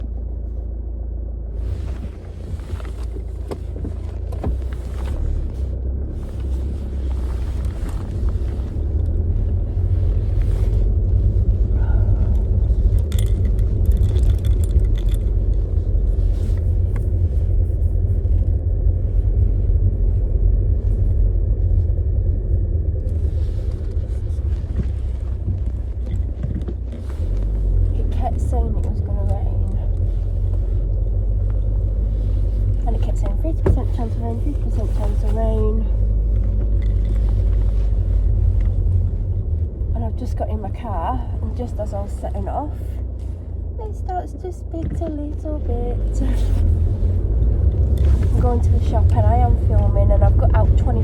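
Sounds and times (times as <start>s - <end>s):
engine and road rumble: 0.0s - 51.0s
light clicks and rattles: 12.2s - 17.5s.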